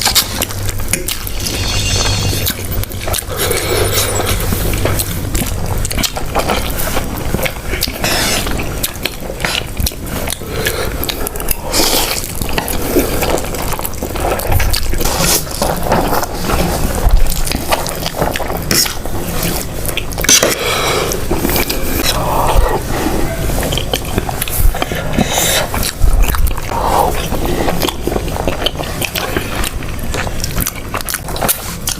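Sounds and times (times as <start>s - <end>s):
noodle slurping and chewing: 2.4s - 31.9s.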